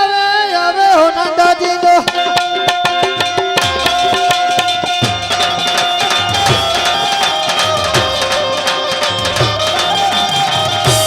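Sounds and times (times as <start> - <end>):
held melody line: 1.2 - 11.0
hand drum beat: 2.0 - 11.0.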